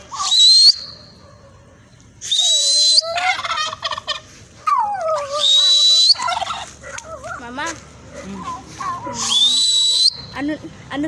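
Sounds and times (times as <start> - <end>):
turkey gobbling: 0.0 - 1.6, 2.4 - 7.5, 8.3 - 10.3.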